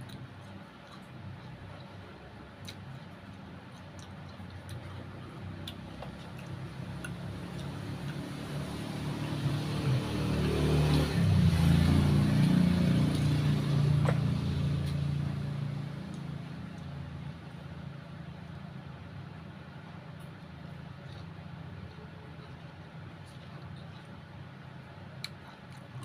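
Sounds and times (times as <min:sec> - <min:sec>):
vehicle passing by: 0:04.7 - 0:17.6.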